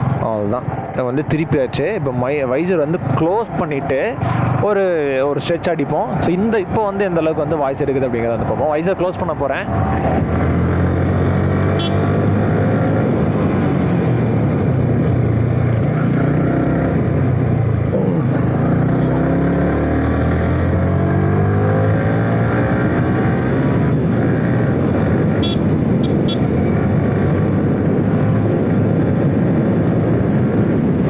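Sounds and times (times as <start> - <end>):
motorcycle engine drone: 6.3 - 31.0
wind rush in helmet: 9.6 - 16.2, 21.9 - 31.0.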